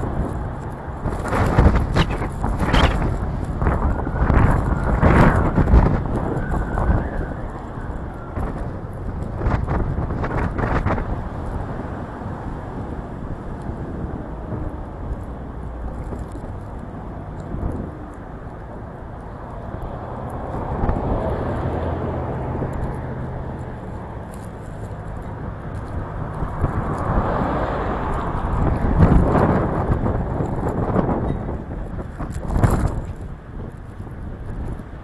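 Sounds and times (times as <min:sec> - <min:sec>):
car driving hum: 0:00.0 - 0:35.0
wind buffeting microphone: 0:00.0 - 0:35.0.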